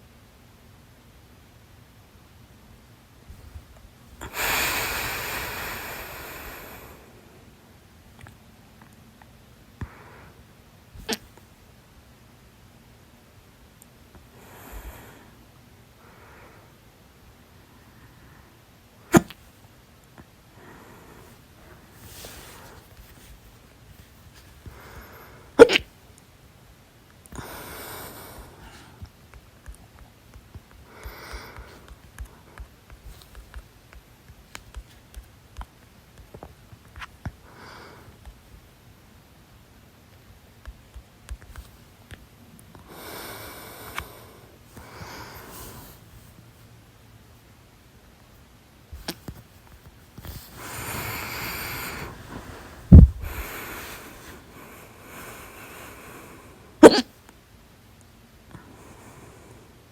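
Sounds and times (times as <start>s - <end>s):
sniff: 4.2s - 7.1s, 20.6s - 23.3s, 42.9s - 46.0s, 50.2s - 57.0s
person breathing: 4.2s - 7.5s, 14.3s - 16.8s, 20.5s - 23.3s, 24.6s - 25.7s, 27.3s - 29.1s, 30.8s - 33.3s, 37.4s - 38.2s, 42.8s - 46.2s, 50.3s - 57.0s
person hiccuping: 25.6s - 25.9s, 56.8s - 57.1s
breathy sound: 50.6s - 57.0s.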